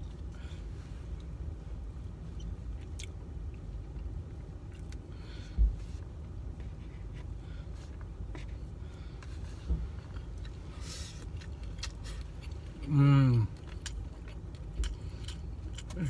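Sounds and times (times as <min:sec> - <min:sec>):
steady low rumble: 0:00.0 - 0:16.0
person chewing rice: 0:02.4 - 0:05.1, 0:10.0 - 0:16.0.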